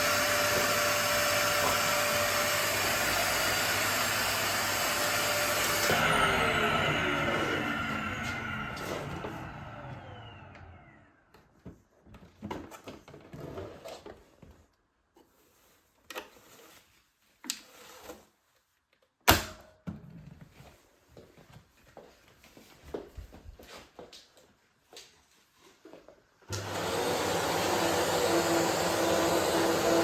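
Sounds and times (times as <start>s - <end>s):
vacuum cleaner motor whine: 0.0s - 11.4s, 26.5s - 30.0s.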